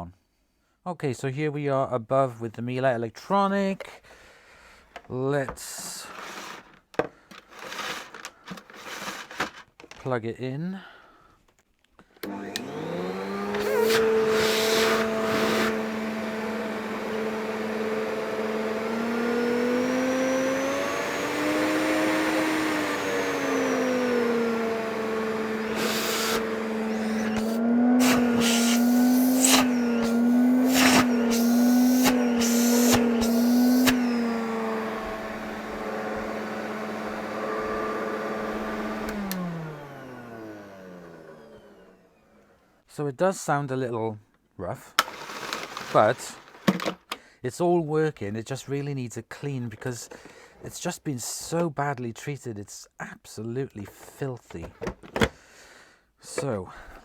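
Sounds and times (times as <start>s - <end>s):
vacuum cleaner motor whine: 7.6s - 9.4s, 12.2s - 42.5s, 45.0s - 47.0s.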